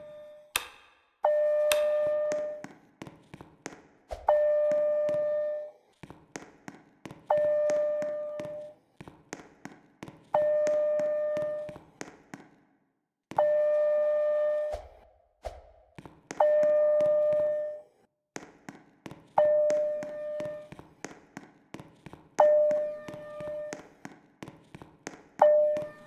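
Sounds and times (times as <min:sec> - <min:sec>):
fire alarm chime tone: 0:01.2 - 0:02.6, 0:04.3 - 0:05.7, 0:07.3 - 0:08.7, 0:10.4 - 0:11.7, 0:13.4 - 0:14.7, 0:16.4 - 0:17.8, 0:22.4 - 0:23.7, 0:25.4 - 0:26.0.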